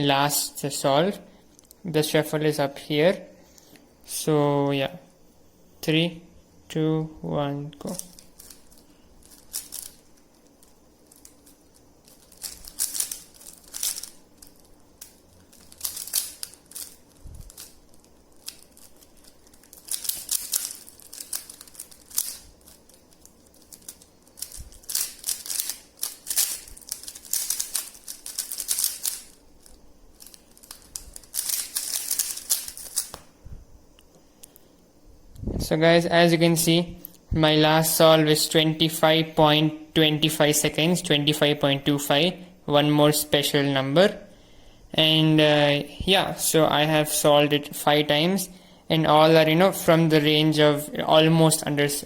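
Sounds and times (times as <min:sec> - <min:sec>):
puzzle cube clicking and rattling: 0:07.8 - 0:33.2.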